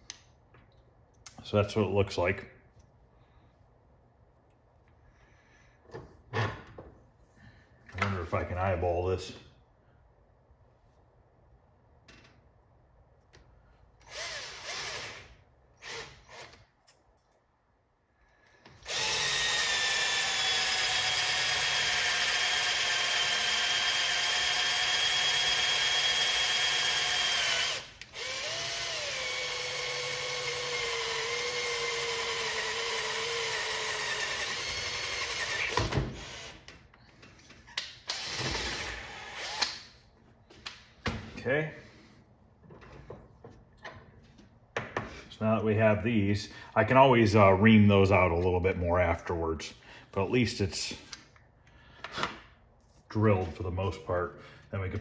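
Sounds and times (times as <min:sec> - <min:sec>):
electric drill boring wood: 0:14.0 - 0:16.6, 0:18.8 - 0:36.7, 0:38.1 - 0:39.8.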